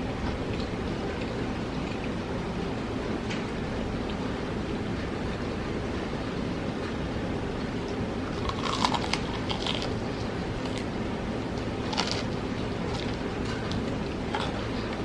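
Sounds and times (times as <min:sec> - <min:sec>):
crunchy bites and chewing: 0:08.2 - 0:15.0.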